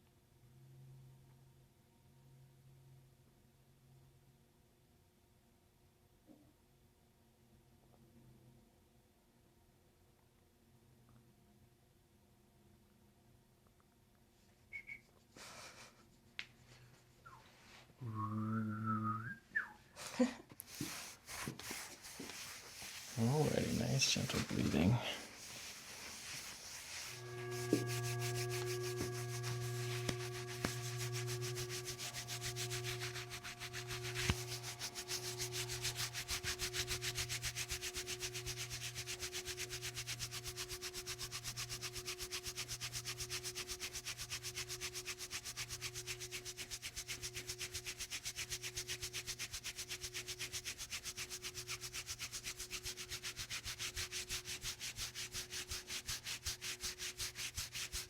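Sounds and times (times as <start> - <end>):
pulsing hum: 26.8 - 52.1.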